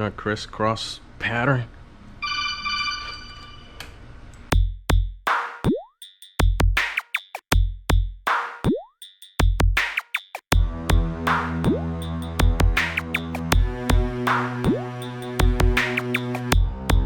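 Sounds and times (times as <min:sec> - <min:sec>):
drum machine beat: 0:04.5 - 0:17.0.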